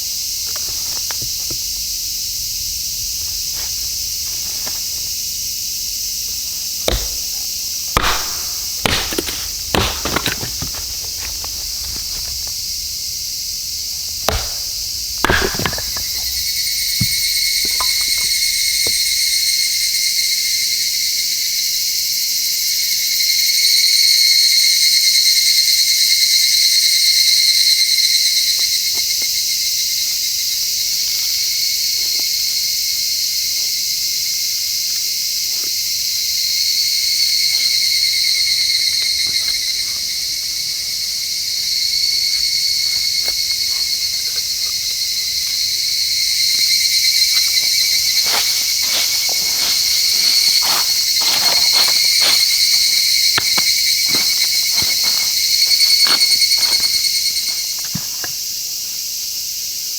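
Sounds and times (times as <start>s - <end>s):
insects chorus: 0.0s - 59.9s
sharp knocks: 6.9s - 12.5s, 14.2s - 18.5s.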